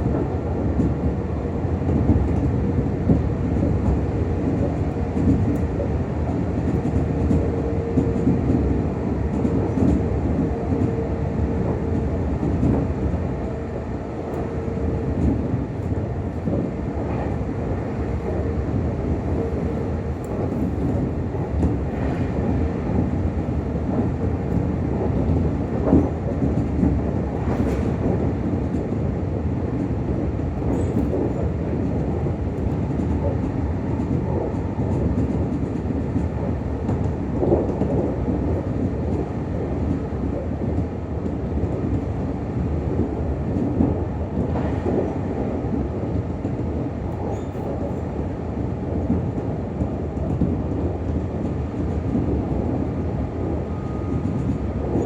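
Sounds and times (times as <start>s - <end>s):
train wheels rumbling: 0.0s - 55.0s
rail-joint clicks: 19.4s - 42.2s, 42.8s - 55.0s.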